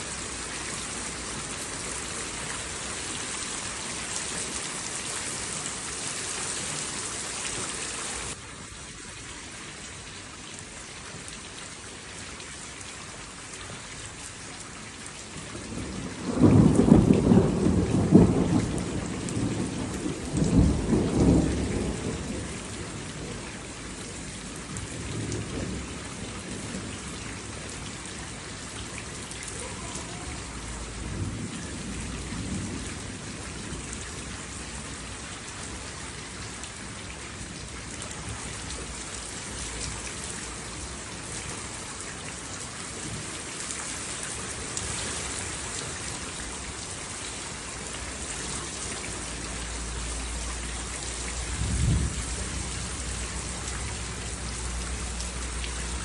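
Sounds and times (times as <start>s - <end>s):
heavy rain falling: 0.0s - 56.0s
thunder rumbling: 15.6s - 27.1s, 51.4s - 54.3s.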